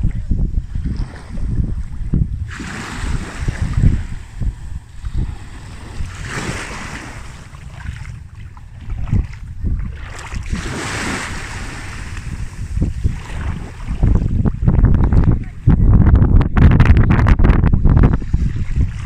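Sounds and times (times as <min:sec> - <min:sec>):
wind gusting on microphone: 0:00.0 - 0:19.0
waves washing on beach: 0:00.7 - 0:14.4.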